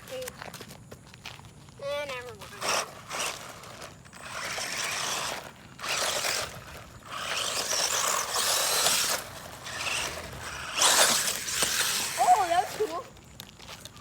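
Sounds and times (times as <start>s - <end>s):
rc truck tyres scrabbling on gravel: 0.0s - 14.0s.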